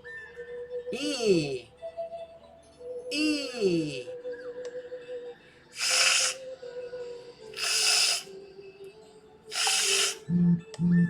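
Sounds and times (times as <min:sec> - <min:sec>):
soft background music: 0:00.0 - 0:11.0
man making a hissing rasp: 0:03.1 - 0:04.1, 0:05.8 - 0:06.5, 0:07.6 - 0:08.3, 0:09.5 - 0:10.3.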